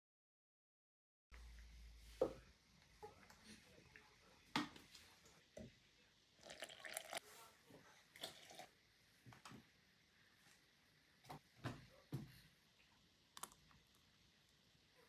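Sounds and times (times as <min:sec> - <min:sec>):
containers and utensils clinking: 0:06.4 - 0:07.3
squishy liquid noises: 0:06.4 - 0:07.3.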